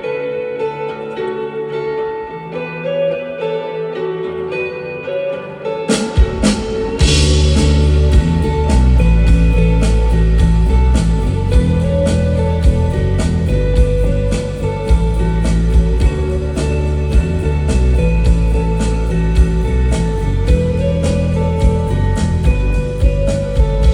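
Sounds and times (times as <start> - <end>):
guitar notes: 0.0 - 23.9
rock band playing: 2.3 - 23.9
cymbal hits: 5.9 - 12.3.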